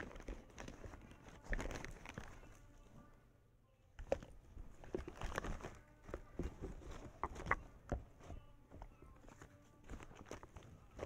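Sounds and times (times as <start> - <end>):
makeup items clicking and tapping: 4.0 - 11.0.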